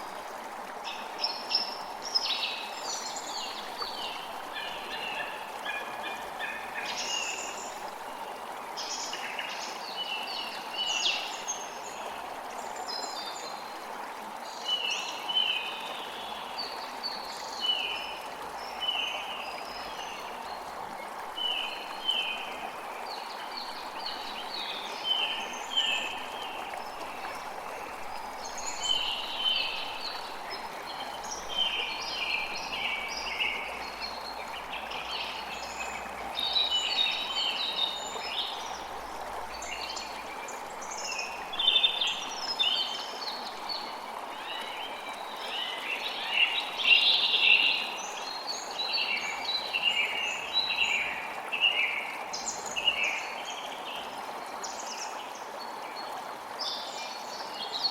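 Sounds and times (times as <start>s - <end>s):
running water rushing: 0.0s - 57.9s.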